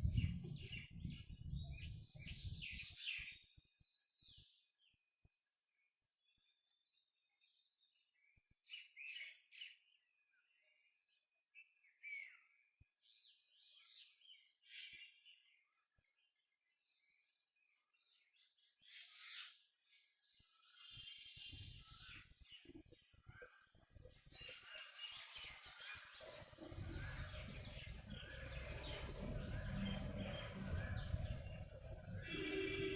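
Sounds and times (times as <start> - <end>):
low rumbling noise: 0.0 - 2.8, 26.1 - 32.9
birds chirping and singing: 0.0 - 4.6, 11.8 - 32.9.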